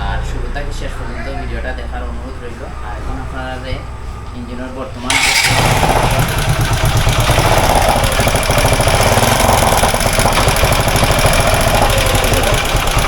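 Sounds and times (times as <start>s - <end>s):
motorcycle engine clattering: 3.8s - 13.0s.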